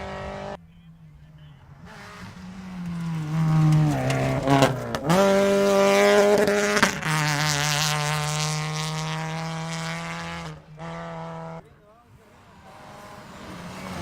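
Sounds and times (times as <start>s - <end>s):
rally car engine revving: 0.0s - 14.0s
exhaust crackling pops: 1.8s - 8.4s.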